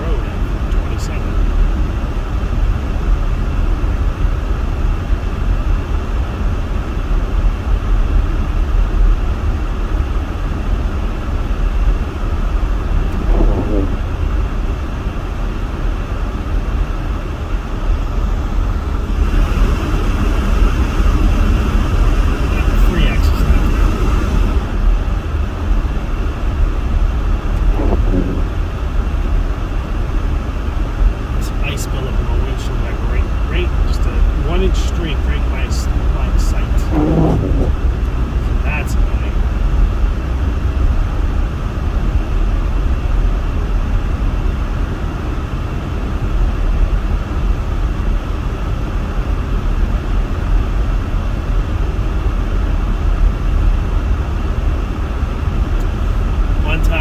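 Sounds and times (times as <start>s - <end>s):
road and engine rumble: 0.0s - 57.0s
heater blower running: 17.7s - 22.8s.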